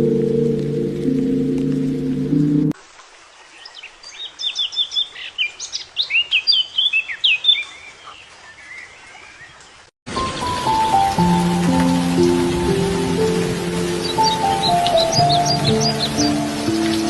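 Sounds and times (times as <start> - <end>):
songbird chirping and whistling: 3.6 - 9.5, 13.2 - 17.0.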